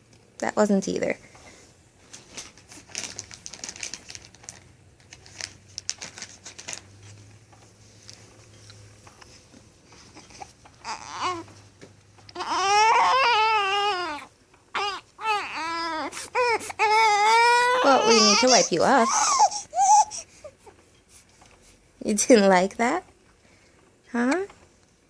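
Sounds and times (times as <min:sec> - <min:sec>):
infant crying: 0:10.2 - 0:11.5, 0:12.3 - 0:20.7.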